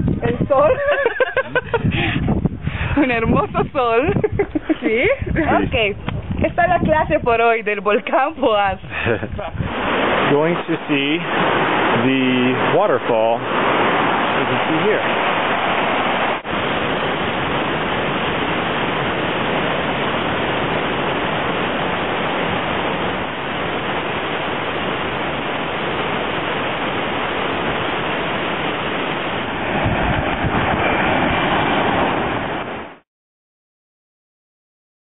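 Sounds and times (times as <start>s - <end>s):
waterfall roaring: 4.7s - 7.1s, 8.0s - 33.0s.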